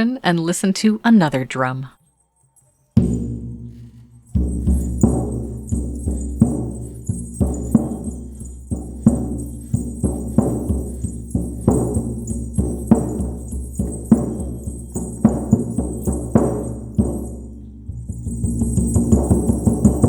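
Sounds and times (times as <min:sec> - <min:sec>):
frame drum struck with beater: 0:03.0 - 0:20.0
high shimmering jingle: 0:18.0 - 0:20.0.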